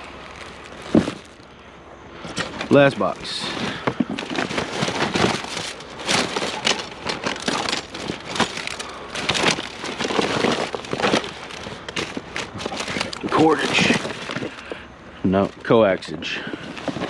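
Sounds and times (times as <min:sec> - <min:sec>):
rustling and crinkling: 0:00.0 - 0:17.0
objects knocking: 0:00.8 - 0:01.4, 0:03.4 - 0:14.8.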